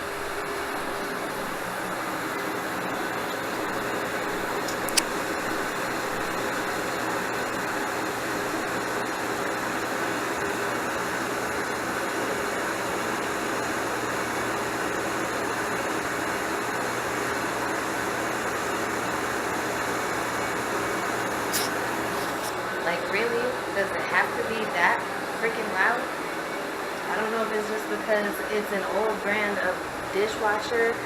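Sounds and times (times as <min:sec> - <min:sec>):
dishwasher running: 0:00.0 - 0:25.2
sharp click: 0:04.7 - 0:05.2.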